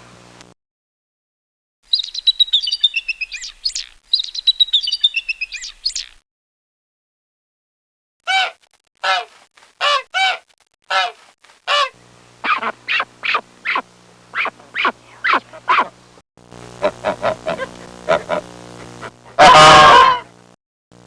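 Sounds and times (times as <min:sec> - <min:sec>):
geese honking: 0:08.3 - 0:15.9, 0:16.8 - 0:20.3
low steady hum: 0:11.7 - 0:20.5.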